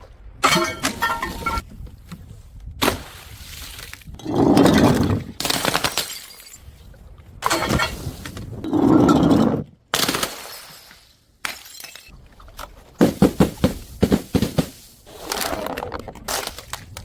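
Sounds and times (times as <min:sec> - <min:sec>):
glass bottles smashing: 0:00.4 - 0:01.6, 0:04.6 - 0:06.7, 0:11.5 - 0:12.1
crackling glass shards: 0:05.7 - 0:06.7.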